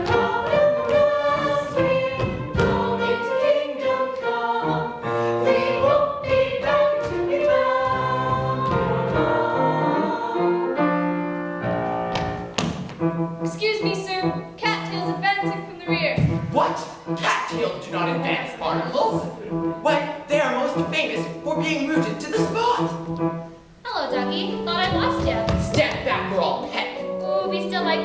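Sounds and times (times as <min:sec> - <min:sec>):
choir singing with instruments: 0:00.0 - 0:12.0.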